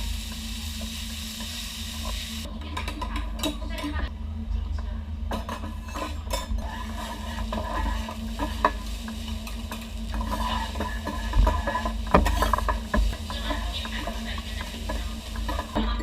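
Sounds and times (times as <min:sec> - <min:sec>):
steady low hum: 0:00.0 - 0:16.0
utensils clinking against dishes: 0:05.3 - 0:16.0.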